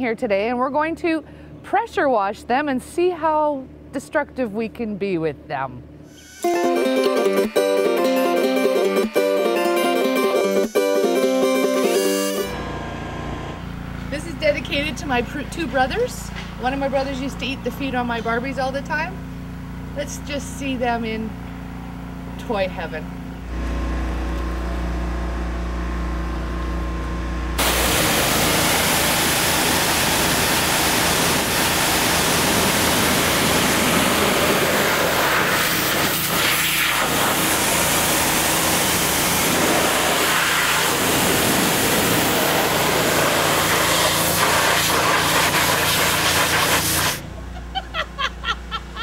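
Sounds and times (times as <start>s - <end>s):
pressure washer engine running: 6.4s - 47.8s
high-pressure water jet hissing: 27.6s - 47.2s.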